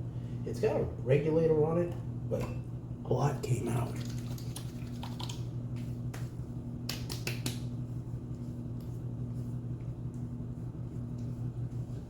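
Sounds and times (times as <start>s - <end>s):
steady low hum: 0.0s - 12.0s
hands slapping face: 5.8s - 7.8s.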